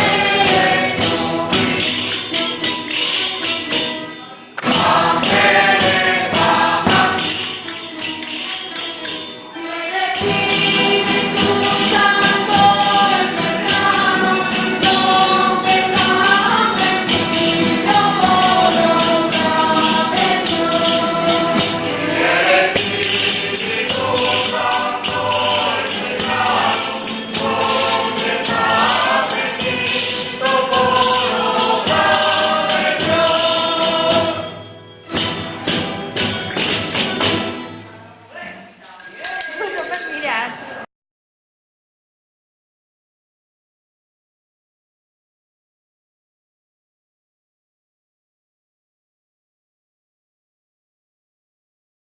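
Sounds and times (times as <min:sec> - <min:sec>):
group singing: 0:00.0 - 0:37.7
jingling percussion: 0:00.0 - 0:40.8.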